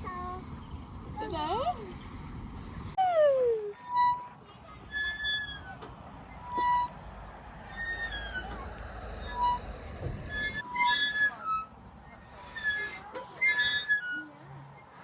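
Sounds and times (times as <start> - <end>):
low rumble: 7.0 - 10.6.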